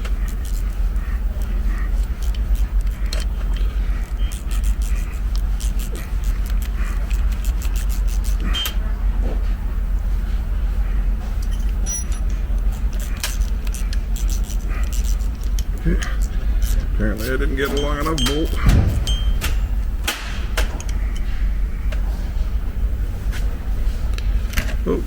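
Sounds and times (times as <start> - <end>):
steady low hum: 0.0 - 25.0
metallic clinks of hand tools: 17.6 - 19.5.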